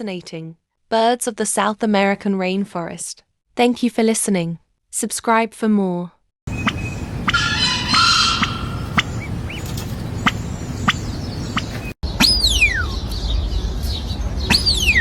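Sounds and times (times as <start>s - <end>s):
short bird chirps: 8.4s - 13.3s, 13.9s - 15.0s.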